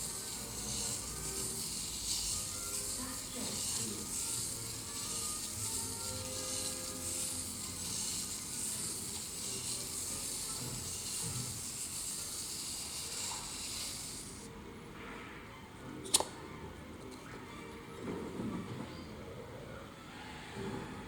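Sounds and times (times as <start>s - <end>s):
rubbing on sandpaper: 0.0s - 14.5s.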